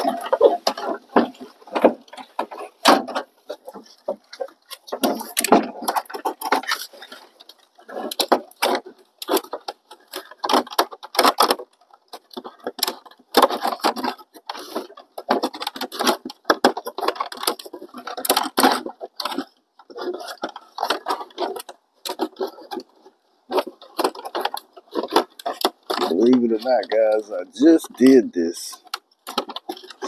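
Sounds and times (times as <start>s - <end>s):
hard parts clicking and rattling: 0.0s - 30.0s.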